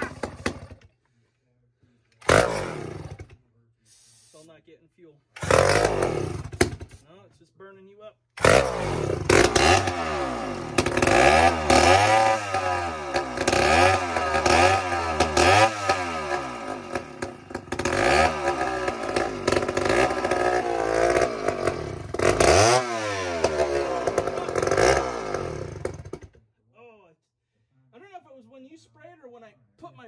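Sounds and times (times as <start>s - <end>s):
chainsaw engine revving: 0.0s - 0.9s, 2.2s - 3.4s, 5.4s - 7.0s, 8.4s - 26.4s.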